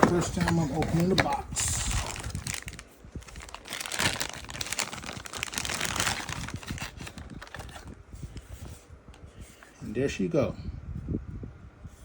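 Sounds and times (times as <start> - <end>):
cardboard packaging rustling: 0.0 - 8.9.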